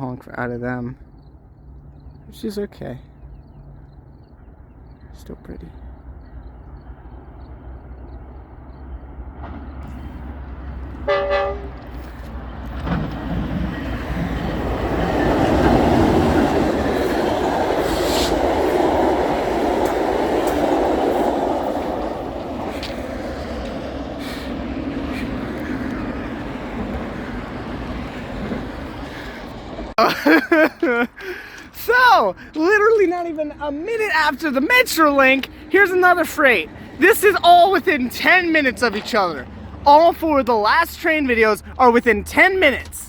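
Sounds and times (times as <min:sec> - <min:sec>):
train rumble and wheel clatter: 0:00.0 - 0:43.0
train horn toot: 0:11.0 - 0:12.1.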